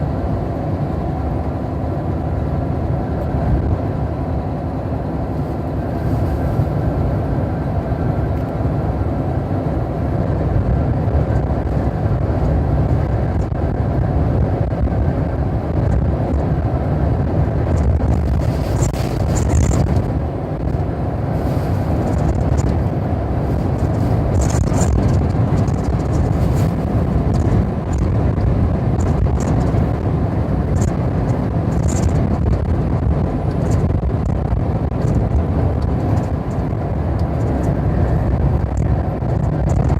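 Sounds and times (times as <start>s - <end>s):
car engine and road rumble: 0.0s - 39.9s.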